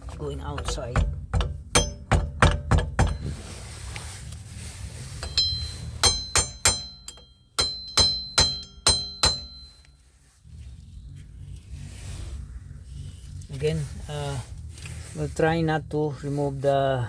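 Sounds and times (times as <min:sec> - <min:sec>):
hammer striking steel hub: 0:00.5 - 0:03.4, 0:05.2 - 0:09.9.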